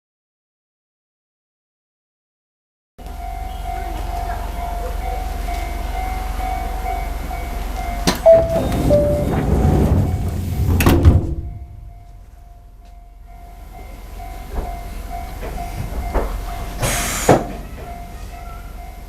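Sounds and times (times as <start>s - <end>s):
two-note falling chime: 3.0s - 10.7s
steady warning tone: 3.0s - 19.0s
sliding doors rumbling shut: 3.6s - 12.1s, 14.2s - 18.1s
door knocks: 8.1s - 11.6s.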